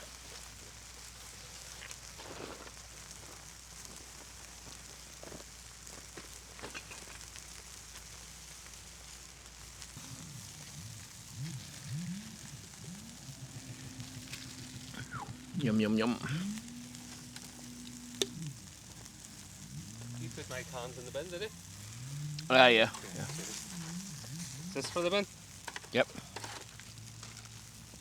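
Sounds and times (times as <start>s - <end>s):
log fire hissing and crackling: 0.0s - 28.0s
low voice murmuring: 10.0s - 25.3s.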